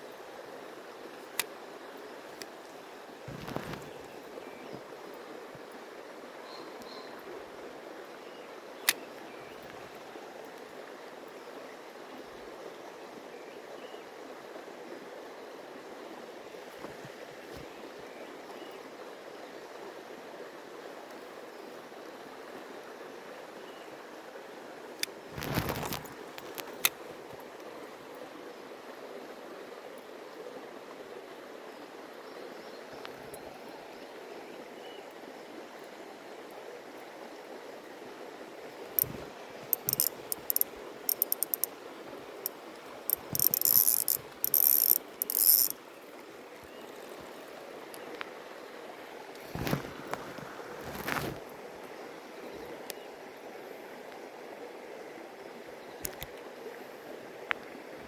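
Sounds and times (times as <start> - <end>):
stream water running: 0.0 - 58.0
sharp click: 39.0 - 41.7, 43.1 - 45.8.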